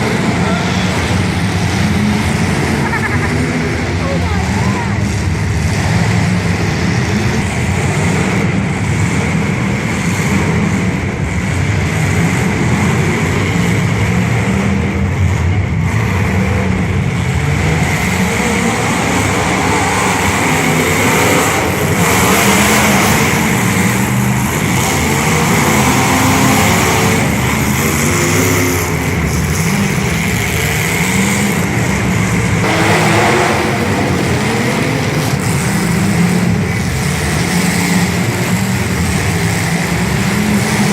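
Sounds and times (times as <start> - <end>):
car engines running and revving: 0.0 - 40.9.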